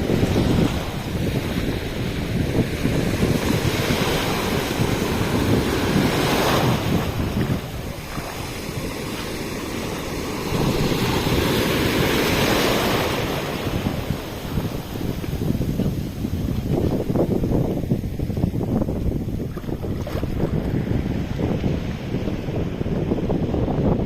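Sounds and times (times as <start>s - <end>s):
sea waves washing on beach: 0.0s - 24.0s
wind buffeting microphone: 0.0s - 24.0s.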